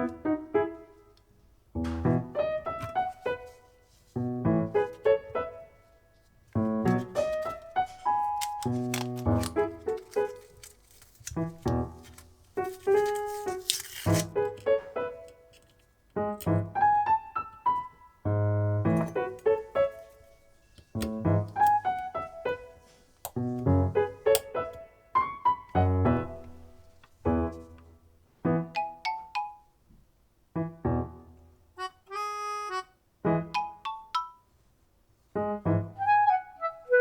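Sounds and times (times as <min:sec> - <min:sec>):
keyboard melody: 0:00.0 - 0:01.2, 0:01.8 - 0:05.9, 0:16.2 - 0:29.8, 0:30.6 - 0:34.6, 0:35.4 - 0:37.0.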